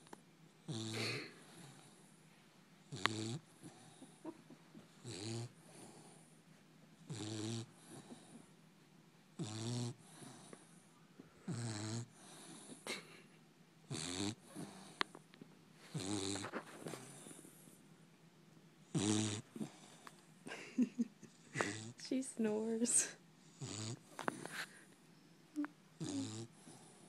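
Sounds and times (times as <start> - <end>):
puppy snoring: 0.6 - 2.2, 2.8 - 6.3, 7.0 - 8.6, 9.3 - 15.2, 15.8 - 17.8, 18.8 - 20.2, 21.2 - 22.3, 23.4 - 24.9, 25.5 - 27.0.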